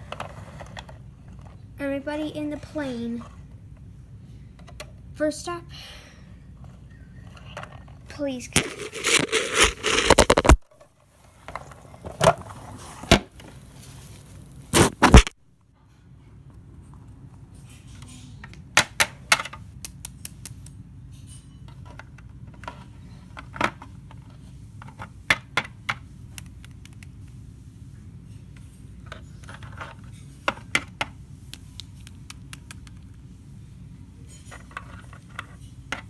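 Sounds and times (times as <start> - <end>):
plastic toys clattering and scraping: 0.0 - 3.4, 6.6 - 15.4, 21.3 - 26.0, 28.3 - 31.2, 34.2 - 36.0.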